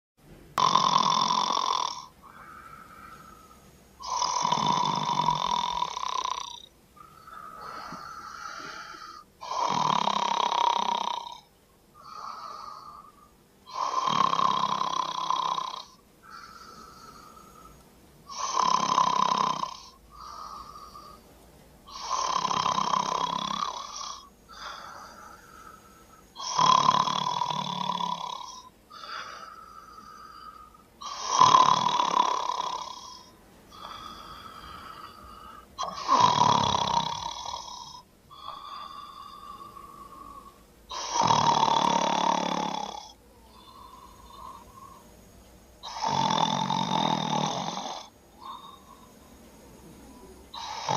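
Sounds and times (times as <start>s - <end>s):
quiet breathing: 0.6s - 50.9s
woman snoring: 0.6s - 50.9s.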